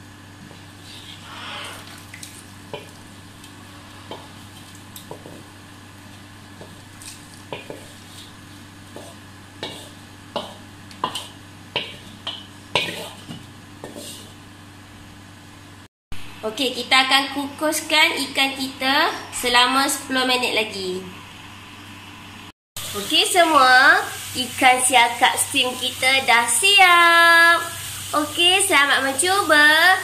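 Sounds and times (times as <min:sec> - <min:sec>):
liquid pouring: 0:01.8 - 0:03.1.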